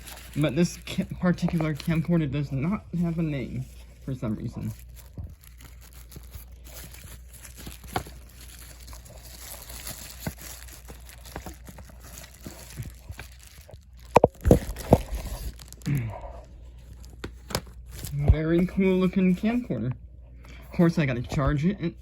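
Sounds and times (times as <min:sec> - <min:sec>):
packaging crinkling: 0:00.0 - 0:02.2, 0:02.9 - 0:19.6.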